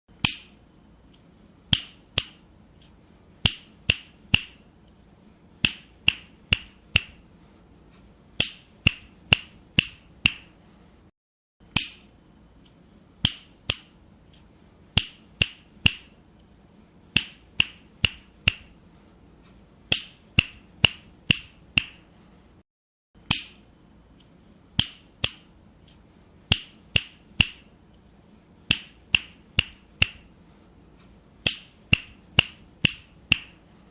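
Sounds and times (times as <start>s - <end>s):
fingers snapping: 0.2s - 4.6s, 5.6s - 7.2s, 13.2s - 16.1s, 17.2s - 18.7s, 19.9s - 22.0s, 24.2s - 27.7s, 28.7s - 30.3s, 31.4s - 33.6s.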